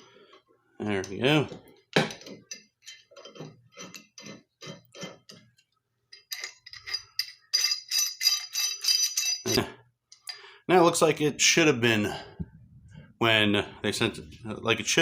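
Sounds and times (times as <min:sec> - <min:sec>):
pipe wrench clicking and clinking: 0:02.1 - 0:05.4, 0:06.1 - 0:10.4.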